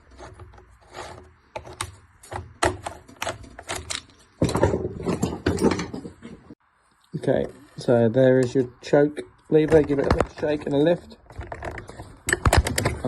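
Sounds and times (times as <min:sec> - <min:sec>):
plastic and metal parts clicking: 0:01.6 - 0:04.2, 0:09.6 - 0:13.0.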